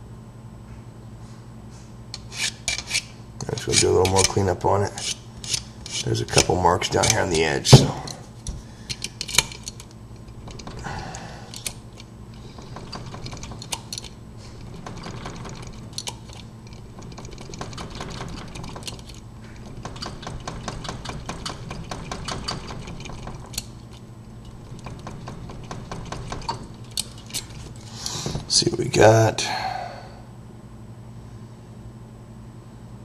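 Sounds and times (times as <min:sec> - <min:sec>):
key rattling and clicking in padlock: 0:08.9 - 0:10.8, 0:12.7 - 0:27.7.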